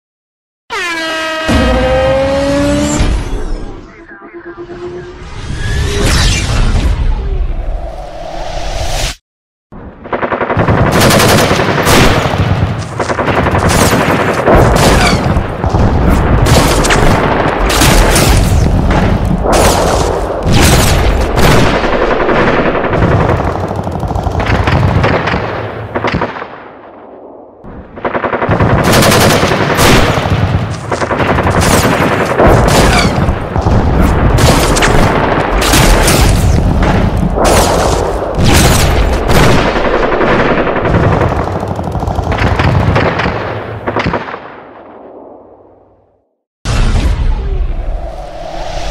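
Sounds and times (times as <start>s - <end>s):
machine-gun and rifle fire: 10.0s - 26.9s, 27.8s - 45.0s.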